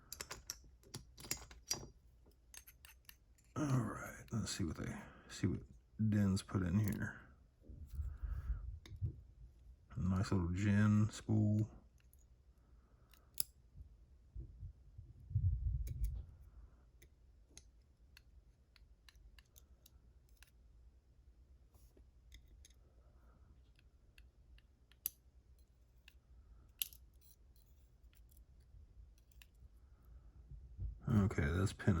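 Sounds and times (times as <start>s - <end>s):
metallic clicks of lock pins: 0.0s - 3.5s, 23.7s - 28.5s.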